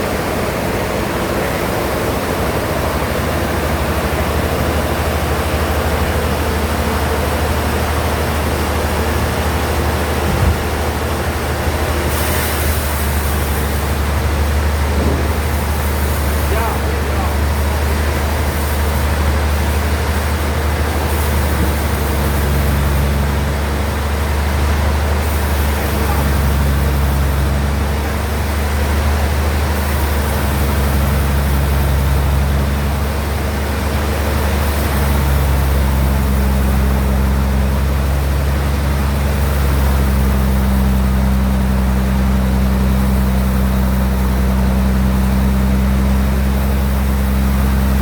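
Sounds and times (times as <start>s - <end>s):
bandsaw machinery running: 0.0s - 48.0s.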